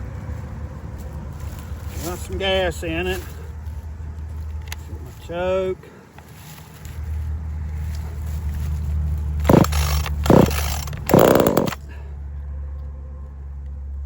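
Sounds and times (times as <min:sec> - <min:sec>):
starter cord ripping: 0:09.2 - 0:11.9
chainsaw engine running: 0:09.2 - 0:12.0.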